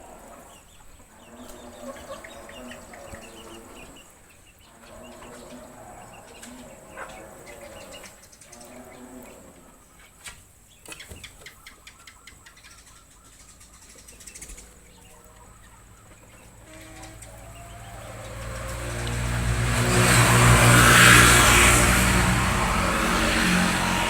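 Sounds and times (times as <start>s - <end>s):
vehicle engine approaching: 14.8s - 24.0s.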